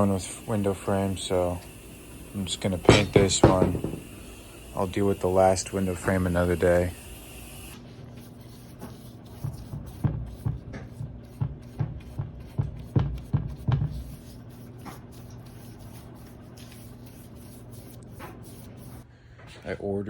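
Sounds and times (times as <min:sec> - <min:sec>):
paintbrush strokes on window frame: 0:07.8 - 0:19.0.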